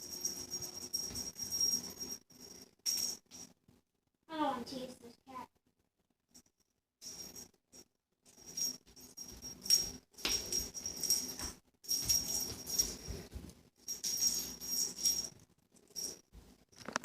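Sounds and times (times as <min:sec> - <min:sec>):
cat toy rattling and jingling: 0:08.3 - 0:16.2.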